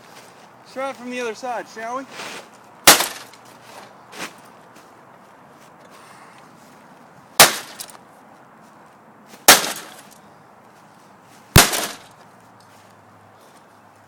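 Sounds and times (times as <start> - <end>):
sharp blows on printer parts: 2.8 - 3.3, 7.4 - 7.9, 9.5 - 10.0, 11.6 - 12.1.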